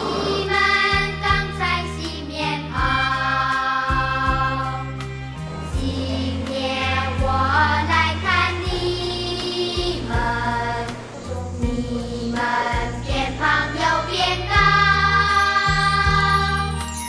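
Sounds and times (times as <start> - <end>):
sustained bass notes: 0.0 - 1.6.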